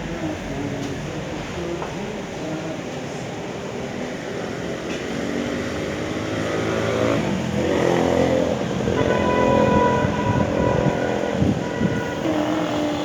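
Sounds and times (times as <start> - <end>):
vehicle engine approaching: 4.2 - 11.0.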